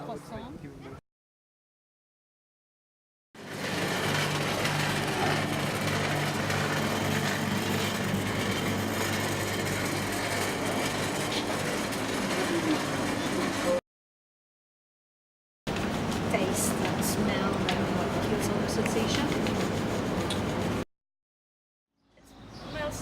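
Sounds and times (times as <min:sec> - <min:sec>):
vehicle engine hum: 0:03.4 - 0:13.8, 0:15.8 - 0:20.8
road rushing noise: 0:15.7 - 0:20.8.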